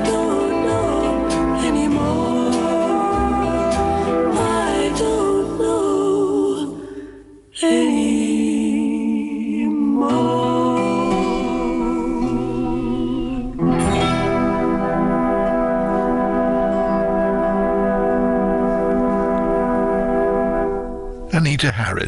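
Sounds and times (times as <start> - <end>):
woman singing with vibrato: 0.0 - 15.2.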